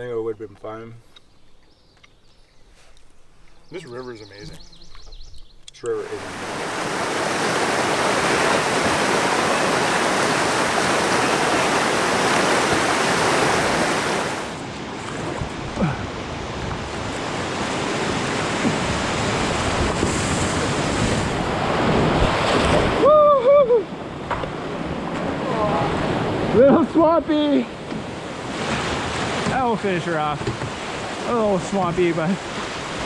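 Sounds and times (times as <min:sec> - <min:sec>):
wind on microphone: 0:05.0 - 0:24.1
river whitewater rushing: 0:06.0 - 0:14.6.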